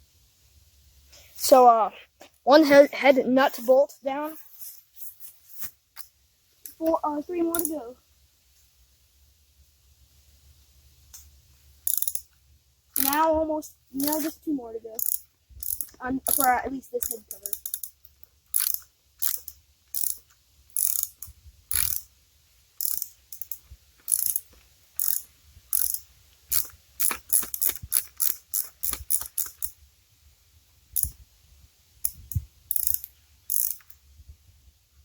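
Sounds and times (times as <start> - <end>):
socket ratchet clicking: 7.5 - 7.7, 11.1 - 13.2, 14.0 - 14.3, 15.0 - 22.1, 22.8 - 29.8, 31.0 - 31.2, 32.0 - 34.0.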